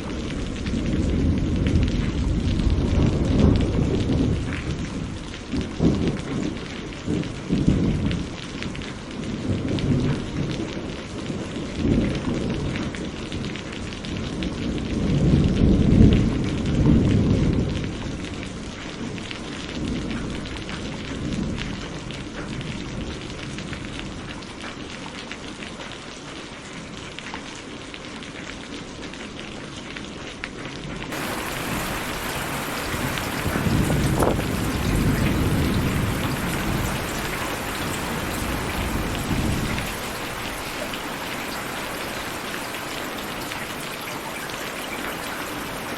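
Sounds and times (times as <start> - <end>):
rolling thunder: 0.0 - 8.4, 31.1 - 43.9
steady rain: 0.0 - 45.9.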